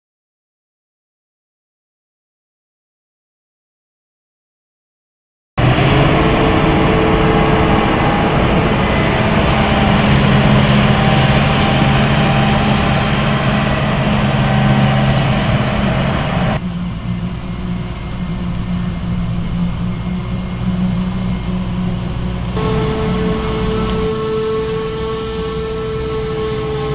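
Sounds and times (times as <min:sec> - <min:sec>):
deep engine drone: 0:05.6 - 0:26.9
loud rushing noise: 0:05.6 - 0:26.9.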